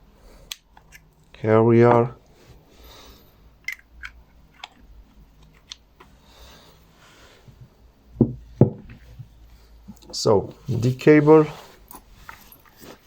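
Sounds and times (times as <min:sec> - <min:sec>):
dull knocks: 0:08.2 - 0:09.0
soft rustle: 0:09.0 - 0:13.0.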